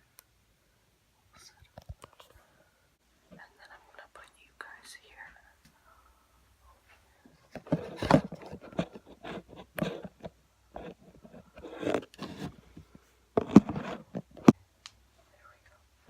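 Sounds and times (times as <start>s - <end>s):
handling scrapes: 7.5s - 14.5s.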